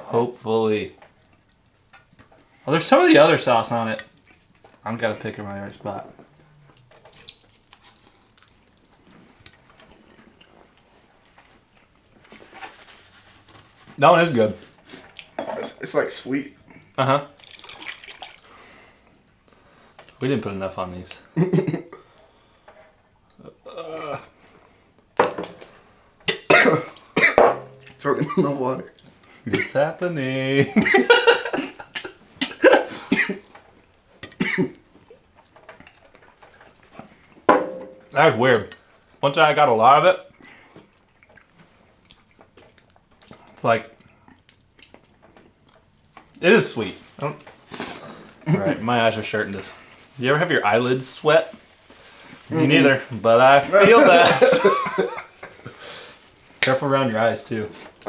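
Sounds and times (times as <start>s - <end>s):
wet chewing clicks and smacks: 1.0s - 2.4s, 4.0s - 4.9s, 5.5s - 12.2s, 14.8s - 15.4s, 28.9s - 29.4s, 33.4s - 37.4s, 40.3s - 46.4s
person coughing: 15.4s - 15.8s, 26.3s - 27.4s, 29.5s - 29.8s, 31.5s - 33.4s, 34.4s - 34.8s, 53.7s - 55.2s.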